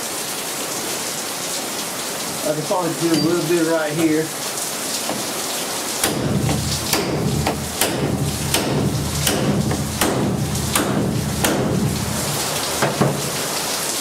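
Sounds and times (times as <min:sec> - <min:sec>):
rain pattering on roof: 0:00.0 - 0:14.0
hammer striking sheet metal: 0:06.0 - 0:13.4.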